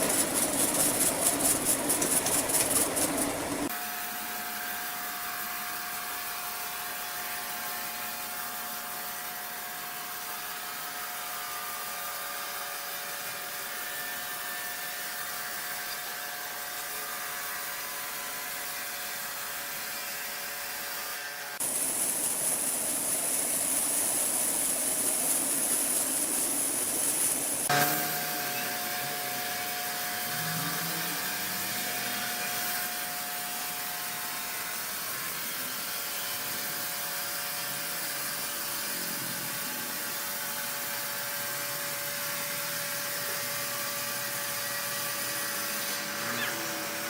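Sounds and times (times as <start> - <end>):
loud steady hissing: 0.0 - 3.7, 21.6 - 30.5
sawmill machinery humming: 0.0 - 3.7, 21.6 - 38.9, 39.5 - 47.0.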